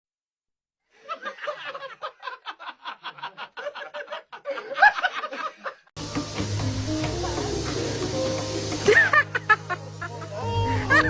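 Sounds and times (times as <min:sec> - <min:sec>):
laughter-like vocal pulses: 0:01.0 - 0:05.9, 0:08.9 - 0:11.0.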